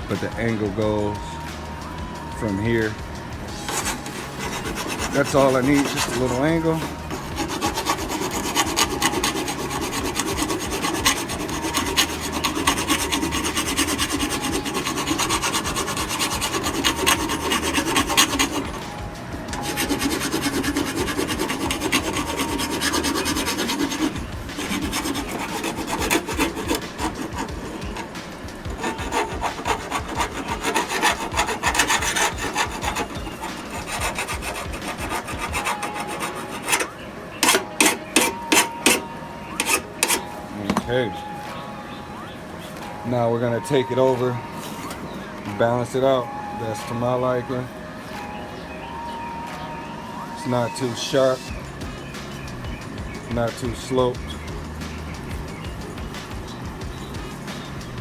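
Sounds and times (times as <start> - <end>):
file rasping on steel blade: 3.5 - 40.4.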